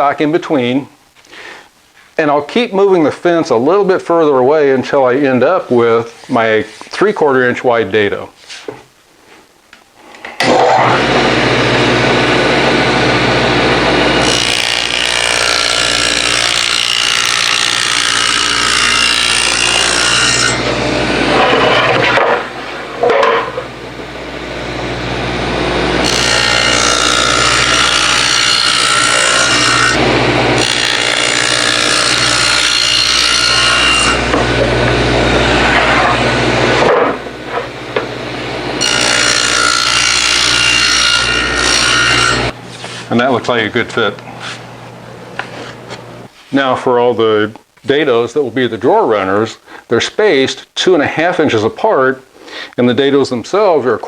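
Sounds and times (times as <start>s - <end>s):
saw cutting plywood: 10.4s - 23.7s, 25.0s - 38.1s, 38.7s - 43.1s
table saw motor humming: 10.4s - 43.6s.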